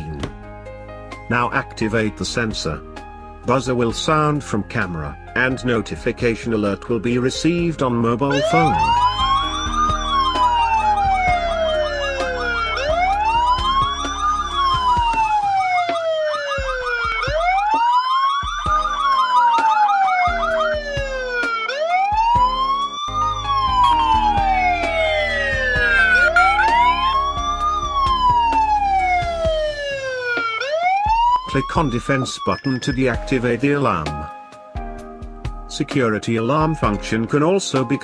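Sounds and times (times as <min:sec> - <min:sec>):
fast warbling tone: 0:08.3 - 0:14.3, 0:23.2 - 0:27.3
wailing alarm siren: 0:08.3 - 0:33.0.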